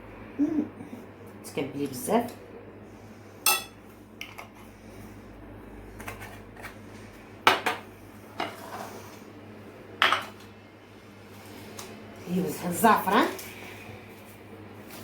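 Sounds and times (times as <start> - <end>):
spoon clinking on dishes: 3.5 - 3.8.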